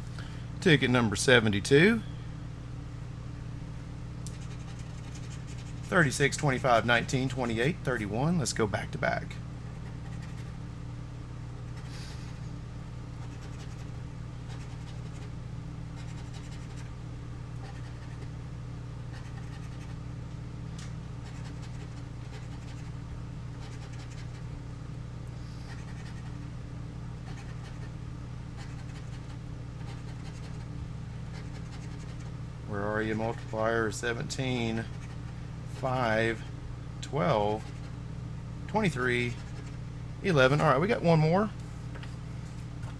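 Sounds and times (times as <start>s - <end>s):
steady low hum: 0.0s - 42.9s
scratching lottery ticket coating: 4.3s - 7.6s, 28.6s - 30.7s, 31.4s - 32.3s.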